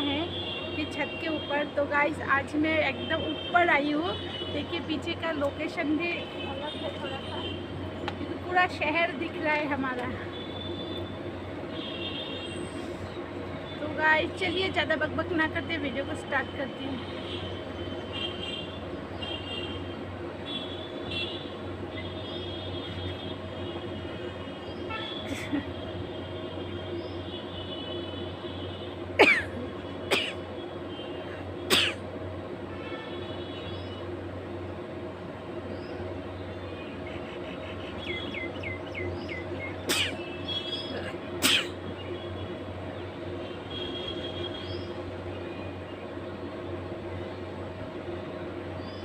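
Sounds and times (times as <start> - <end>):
city traffic hum: 0.0 - 49.0
birds chirping: 26.6 - 27.6, 33.5 - 34.2, 35.6 - 49.0.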